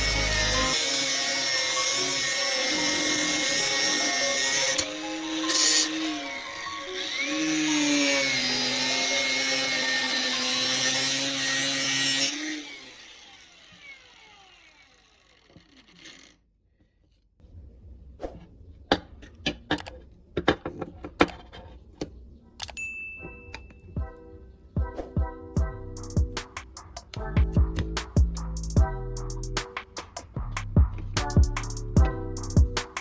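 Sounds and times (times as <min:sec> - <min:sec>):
power tool whining: 0:00.0 - 0:16.4.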